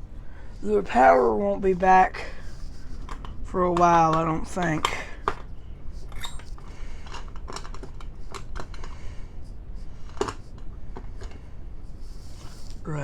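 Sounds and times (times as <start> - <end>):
low steady hum: 0.0 - 13.0
clicks and knocks of handling: 2.9 - 9.0, 10.0 - 11.4.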